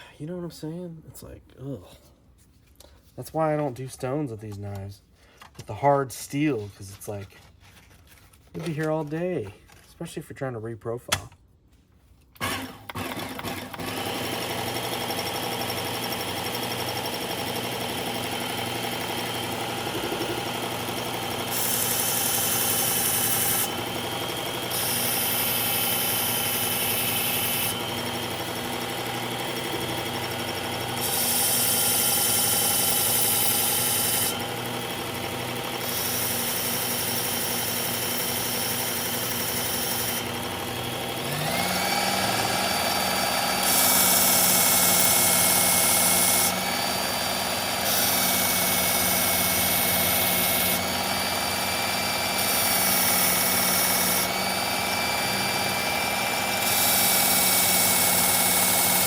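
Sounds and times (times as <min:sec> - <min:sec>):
electric belt sharpener running: 0:12.4 - 0:59.0
knife blade grinding on belt: 0:19.6 - 0:20.7.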